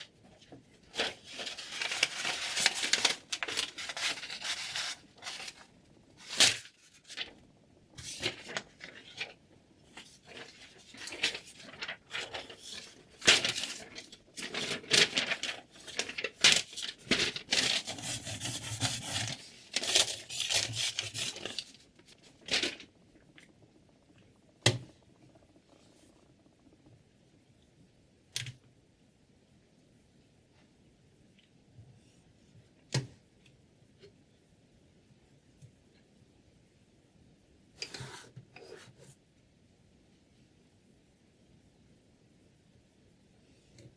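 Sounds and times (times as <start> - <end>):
rubbing and scraping strokes: 16.5 - 21.8.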